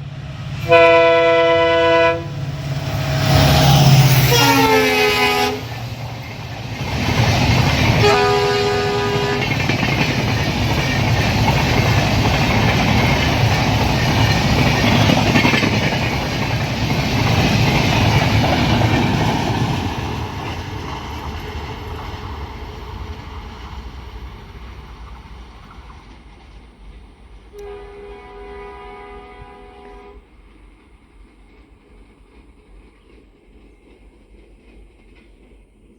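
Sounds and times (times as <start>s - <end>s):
train passing at speed: 0.0s - 35.9s
diesel locomotive horn blast: 0.6s - 5.9s, 7.9s - 9.7s, 27.5s - 30.3s
wheels on rails: 5.2s - 27.8s.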